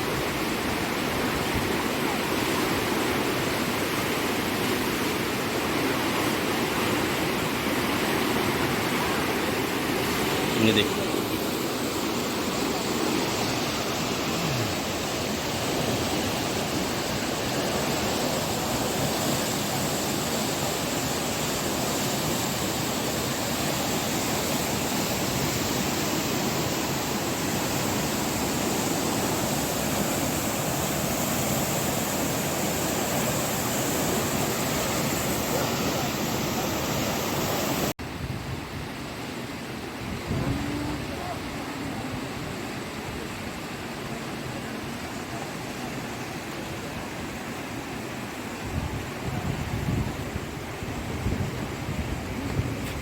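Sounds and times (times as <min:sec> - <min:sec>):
floodwater rushing: 0:00.0 - 0:53.0.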